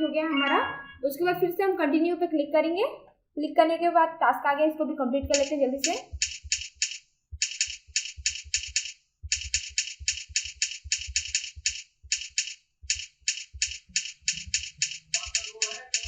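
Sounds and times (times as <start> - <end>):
keyboard keystrokes clicking: 5.2 - 16.0.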